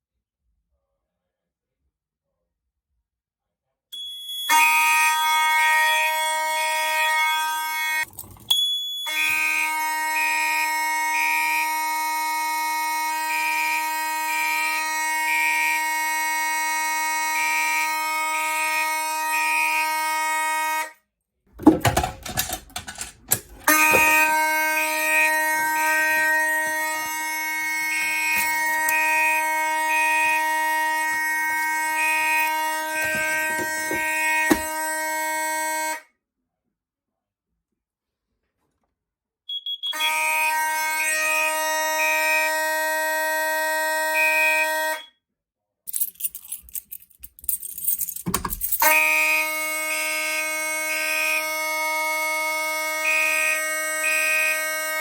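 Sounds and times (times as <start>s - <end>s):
pulsing mechanical alarm horn: 4.0s - 20.8s, 23.6s - 36.0s, 39.5s - 45.1s, 48.7s - 55.0s
continuous fire alarm horn: 4.0s - 21.1s, 22.4s - 36.1s, 39.5s - 45.2s, 48.1s - 55.0s
clicks and knocks: 21.6s - 24.2s, 32.9s - 34.7s, 48.0s - 48.8s.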